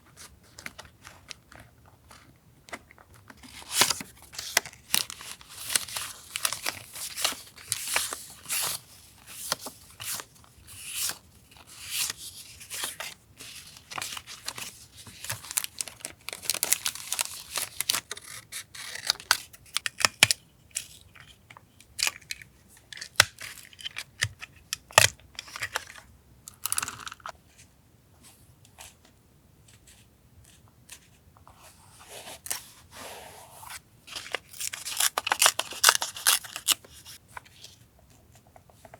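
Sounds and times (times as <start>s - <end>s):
paper tearing and rustling: 34.1s - 37.2s.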